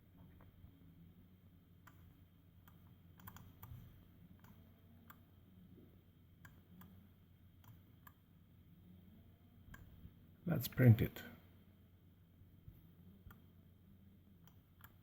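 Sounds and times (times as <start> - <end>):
faint low hum: 0.0 - 15.0
mouse and keyboard clicks: 1.8 - 5.2, 14.4 - 15.0.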